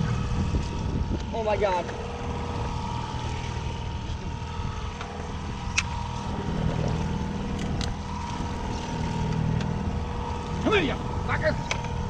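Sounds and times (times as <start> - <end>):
outboard motor humming: 0.0 - 12.0.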